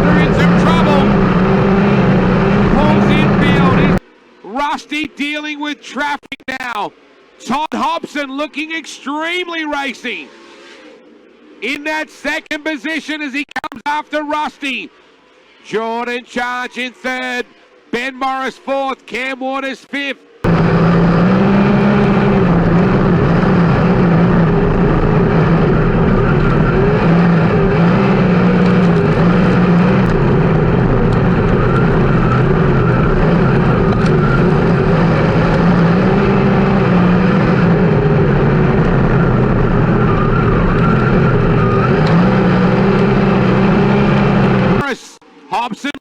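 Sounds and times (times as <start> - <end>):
race car engine at speed: 0.0 - 4.4, 20.4 - 44.9.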